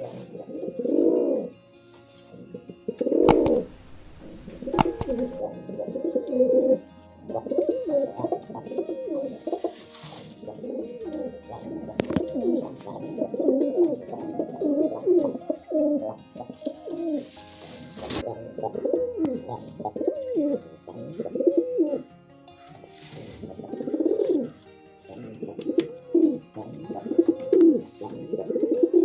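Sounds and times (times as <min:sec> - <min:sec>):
pigeons cooing: 0:00.0 - 0:01.6, 0:02.4 - 0:22.1, 0:23.0 - 0:29.0
sharp clicks: 0:03.3 - 0:05.4.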